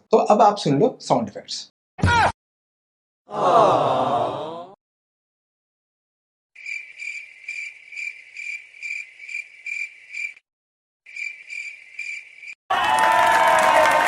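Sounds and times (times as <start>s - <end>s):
cricket chirping: 6.6s - 10.4s, 11.1s - 12.6s.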